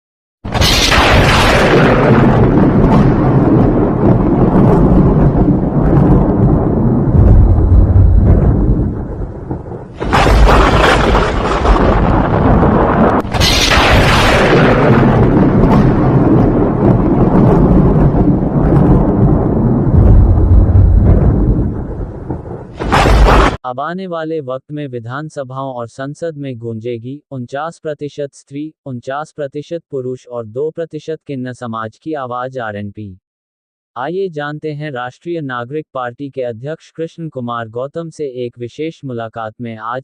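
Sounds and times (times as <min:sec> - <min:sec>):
deep rumbling booms: 0:00.5 - 0:23.6
sudden crashing hits: 0:00.5 - 0:23.6.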